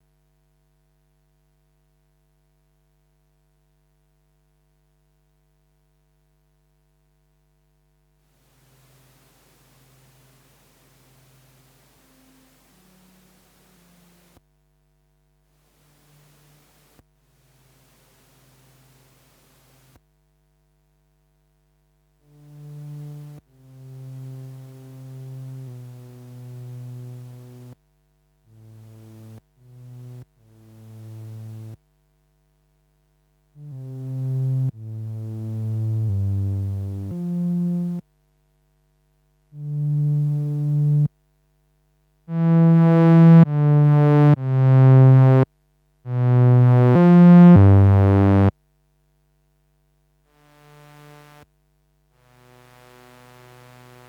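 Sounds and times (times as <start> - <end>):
buzzy synthesizer bass notes: 33.6 - 38.0, 39.6 - 41.1, 42.3 - 45.4, 46.1 - 48.5.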